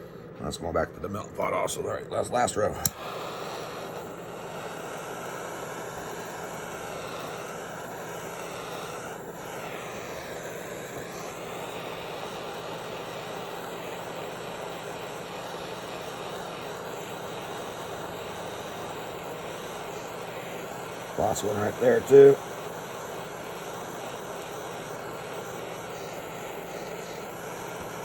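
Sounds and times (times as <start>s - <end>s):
gas torch flame hissing: 1.2s - 28.0s.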